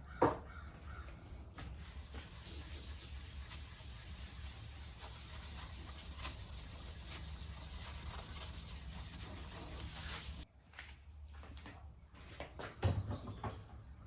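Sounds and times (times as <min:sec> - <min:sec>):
hand rubbing metal and wood: 0:01.8 - 0:10.4.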